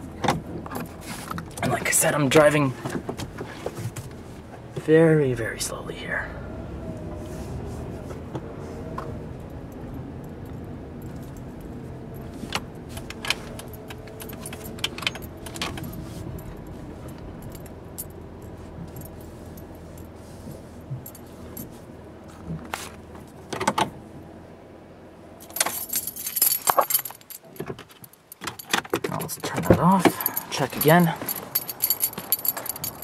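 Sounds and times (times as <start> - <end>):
van engine rumble: 0.0 - 33.0
car keys rattling: 9.4 - 20.2, 25.4 - 33.0.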